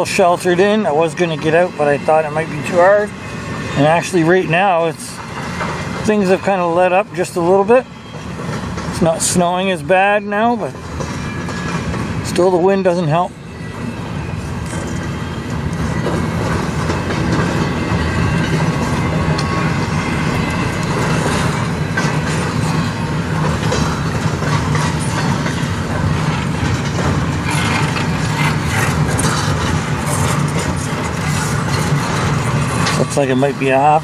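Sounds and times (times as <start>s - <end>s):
freight train rolling past: 0.0s - 34.0s
wheels clicking over rail joints: 14.6s - 34.0s.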